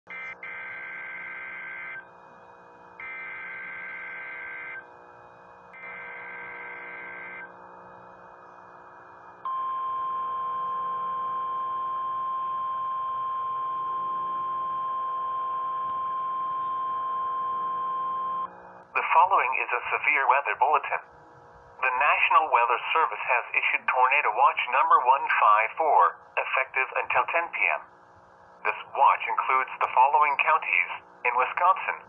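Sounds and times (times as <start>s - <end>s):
steady alarm tone: 0.1s - 2.2s, 3.0s - 4.9s, 5.7s - 18.8s
faint radio hum: 18.4s - 32.0s.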